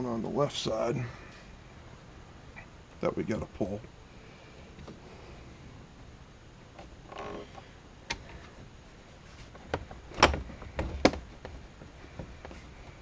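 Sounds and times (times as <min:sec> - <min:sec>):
sharp clicks and knocks: 0:09.5 - 0:12.6.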